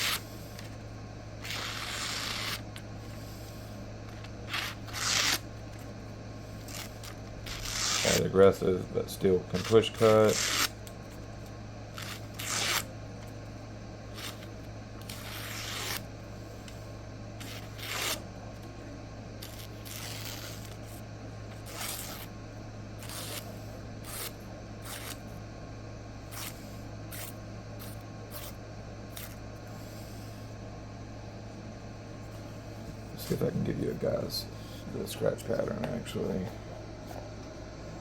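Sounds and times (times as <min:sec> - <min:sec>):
steady low hum: 0:00.0 - 0:38.0
knife slicing paper: 0:01.4 - 0:02.6, 0:04.4 - 0:05.5, 0:06.6 - 0:08.3, 0:09.5 - 0:10.7, 0:11.9 - 0:12.9, 0:14.1 - 0:16.0, 0:17.4 - 0:18.2, 0:19.4 - 0:20.8, 0:21.6 - 0:22.3, 0:23.0 - 0:25.2.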